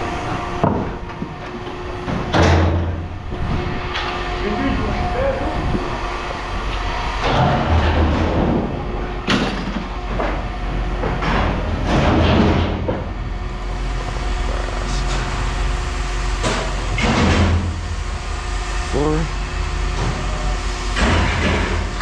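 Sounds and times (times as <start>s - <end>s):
engine running: 0.0s - 22.0s
scrap metal clanking and scraping: 6.7s - 13.1s, 19.9s - 22.0s.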